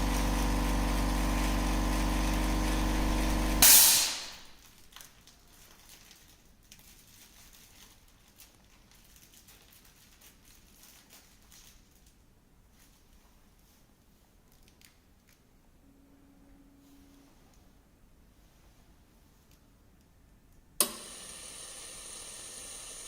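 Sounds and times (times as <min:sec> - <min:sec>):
vacuum pump humming: 0:00.0 - 0:04.4, 0:20.8 - 0:23.0.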